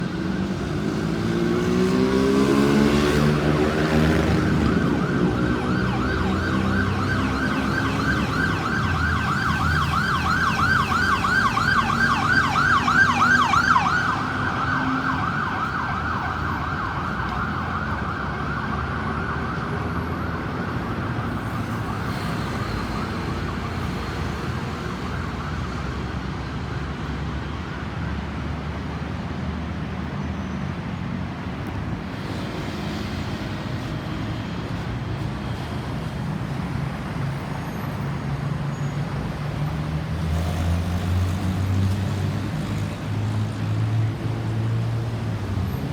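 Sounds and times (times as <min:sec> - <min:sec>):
engine and road traffic noise: 0:00.0 - 0:45.9
ambulance siren yelping: 0:02.5 - 0:26.1.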